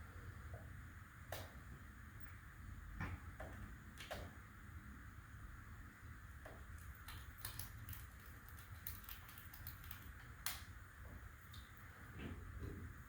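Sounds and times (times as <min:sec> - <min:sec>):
light clicks and taps: 0:06.4 - 0:10.7.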